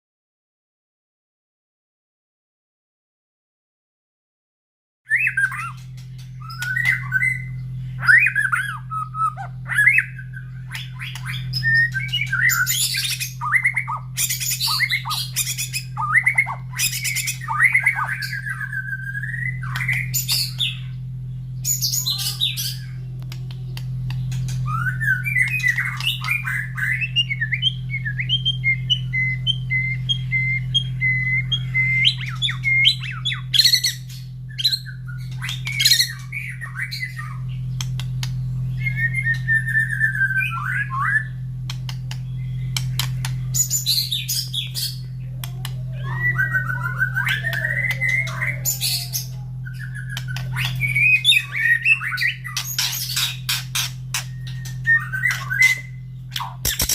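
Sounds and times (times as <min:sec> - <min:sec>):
bird singing whistled phrases: 0:05.1 - 0:05.8, 0:06.4 - 0:21.0, 0:24.6 - 0:37.7, 0:38.7 - 0:41.4, 0:45.7 - 0:56.9
steady low hum: 0:05.1 - 0:56.9
bird clicking and rasping notes: 0:05.4 - 0:20.9, 0:22.6 - 0:56.9.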